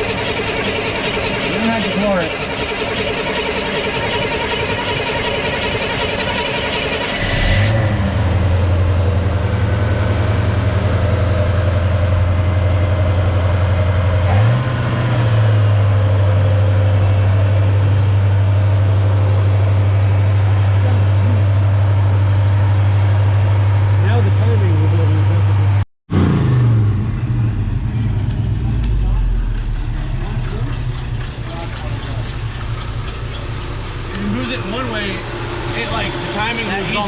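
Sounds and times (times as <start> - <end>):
truck engine starting: 0.0 - 25.1, 26.1 - 37.0
truck engine idling: 0.0 - 25.8, 27.1 - 37.0.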